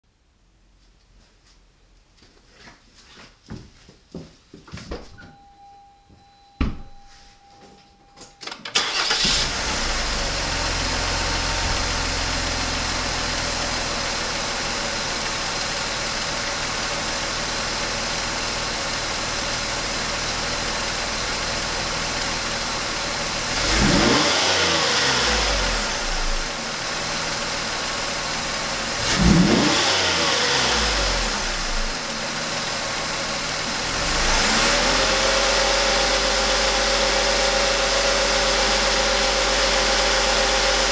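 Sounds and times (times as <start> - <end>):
car engine starting: 8.3 - 40.9
car engine idling: 8.7 - 40.9
engine revving: 8.8 - 14.3, 23.5 - 26.5, 29.0 - 32.0, 33.4 - 40.9.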